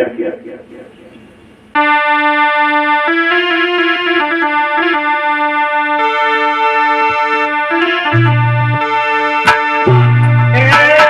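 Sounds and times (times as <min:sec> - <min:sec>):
electronic keyboard melody: 0:01.8 - 0:11.0
low bass note: 0:08.0 - 0:09.1, 0:09.8 - 0:11.0.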